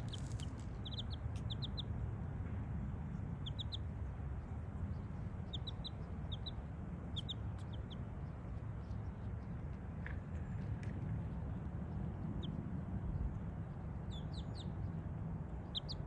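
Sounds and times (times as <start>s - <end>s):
chicks peeping: 0.0s - 1.8s, 5.5s - 6.6s, 7.2s - 8.0s, 15.7s - 16.0s
steady low rumble: 0.0s - 16.0s.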